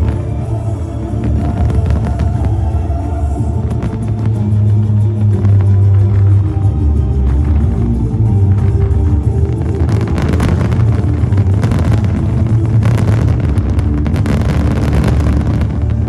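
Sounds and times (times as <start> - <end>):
festival music: 0.0 - 16.0
fireworks bursting: 0.0 - 16.0
fireworks crackling: 0.0 - 16.0.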